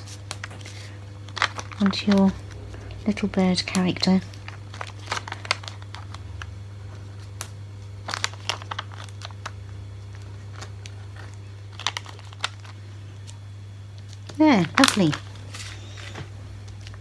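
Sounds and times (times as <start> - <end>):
paper crinkles and taps: 0.0 - 2.3
steady low hum: 0.0 - 17.0.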